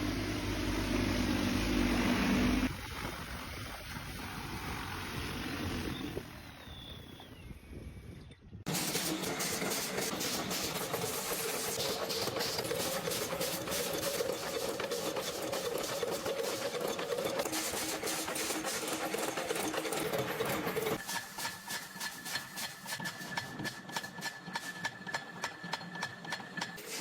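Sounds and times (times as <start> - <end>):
machinery humming: 0.0 - 3.0
rapidly clicking machine: 8.7 - 26.8.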